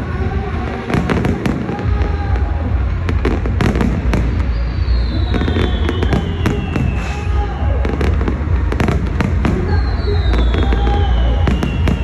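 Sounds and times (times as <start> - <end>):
fireworks crackling and popping: 0.0 - 12.0
falling firework whistle: 4.3 - 8.1, 9.7 - 12.0.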